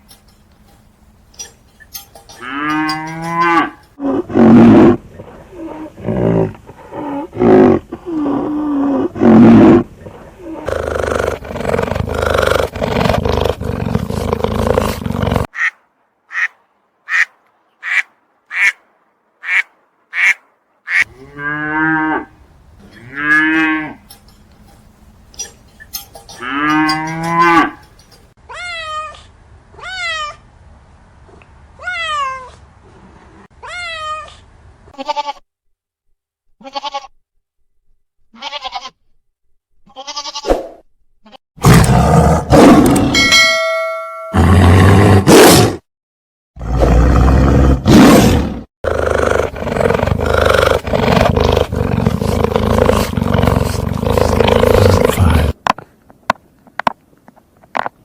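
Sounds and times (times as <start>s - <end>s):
loud animal roars: 2.5s - 15.5s, 41.6s - 43.2s, 46.6s - 55.6s.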